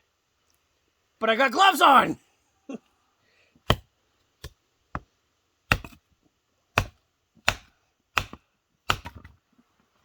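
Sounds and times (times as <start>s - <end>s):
hatchet chopping wood: 3.6s - 6.1s, 6.7s - 9.4s.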